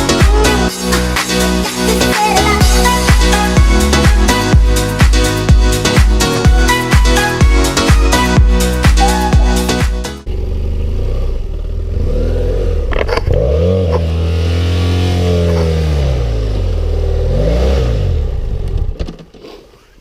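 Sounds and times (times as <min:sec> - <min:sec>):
electronic music: 0:00.0 - 0:10.3
motorcycle engine revving: 0:10.2 - 0:19.3.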